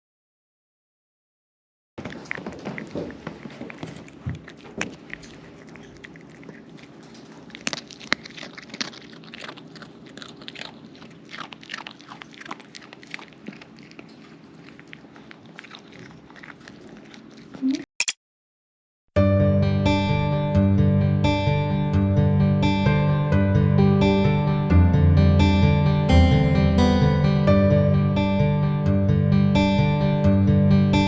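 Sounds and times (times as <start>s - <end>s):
crunchy food being chewed: 2.0s - 17.9s.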